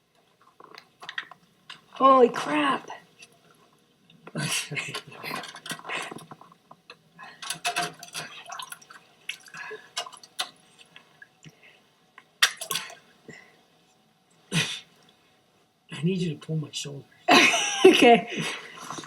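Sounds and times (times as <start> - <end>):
water and ice splashing: 8.0 - 10.4.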